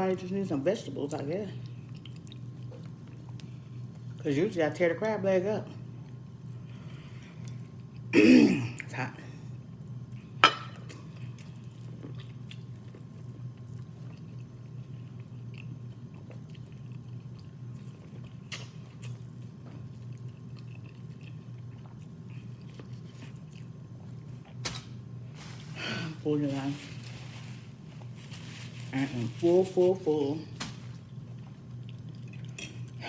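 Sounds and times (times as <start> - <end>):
steady low hum: 0.0 - 33.0
person chewing food: 1.6 - 4.2, 10.1 - 24.6, 31.0 - 33.0.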